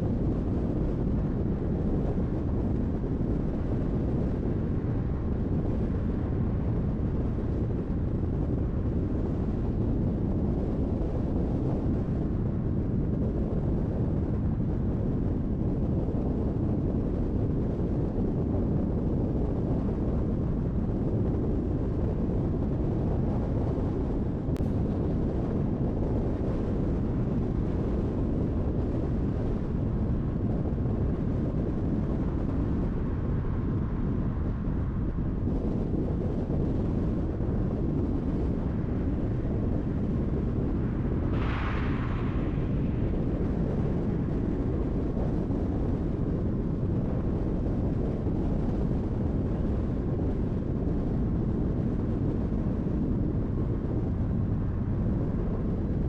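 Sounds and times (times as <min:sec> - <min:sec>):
car road and tyre noise: 0:29.2 - 0:47.0.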